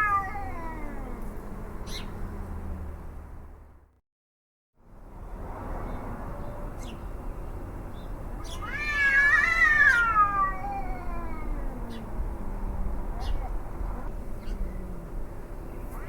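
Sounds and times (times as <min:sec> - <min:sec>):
cat yowling: 0:00.0 - 0:02.1, 0:08.4 - 0:15.1.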